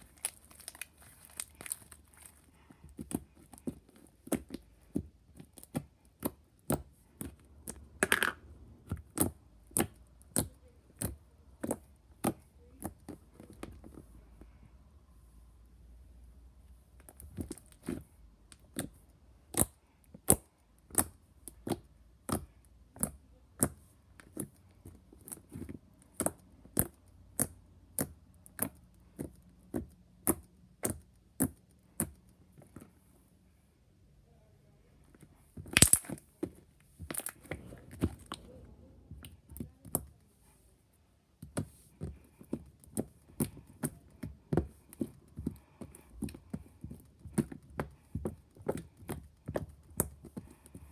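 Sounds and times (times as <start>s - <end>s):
slime clicking and popping: 35.6s - 36.3s.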